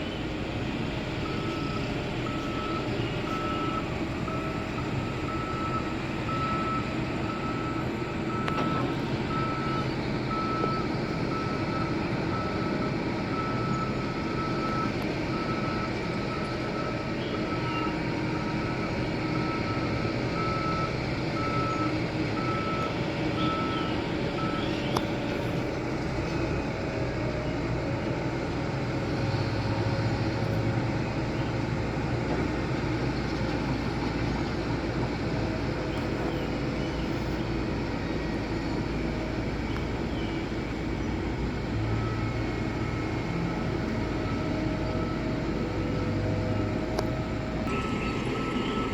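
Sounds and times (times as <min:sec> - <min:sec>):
heavy machine engine running: 0:00.0 - 0:48.9
reversing alarm beeping: 0:01.2 - 0:25.6, 0:41.6 - 0:48.9.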